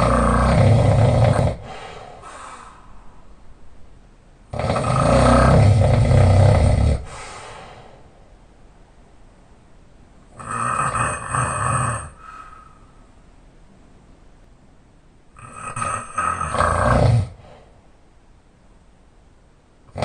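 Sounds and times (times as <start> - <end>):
loud open-mouthed snoring: 0.0 - 2.3, 4.5 - 7.3, 10.4 - 12.3, 15.4 - 17.5.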